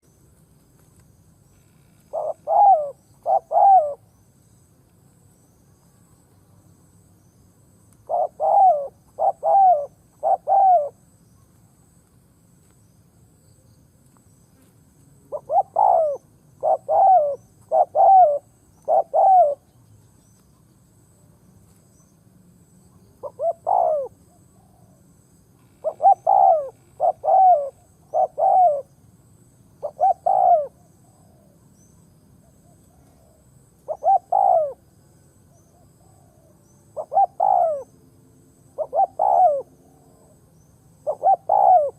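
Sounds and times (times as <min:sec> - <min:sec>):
dove cooing: 0:02.0 - 0:04.1, 0:08.0 - 0:11.1, 0:15.3 - 0:19.7, 0:23.2 - 0:25.0, 0:25.6 - 0:29.0, 0:29.8 - 0:31.7, 0:32.4 - 0:34.9, 0:35.6 - 0:38.0, 0:38.8 - 0:40.4, 0:41.0 - 0:41.9.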